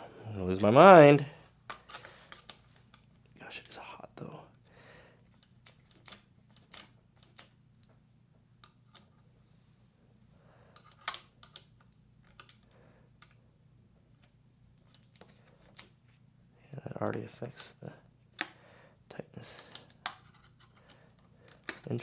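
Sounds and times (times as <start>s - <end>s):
hand tools and metal parts clicking: 1.7s - 3.0s, 19.4s - 22.0s.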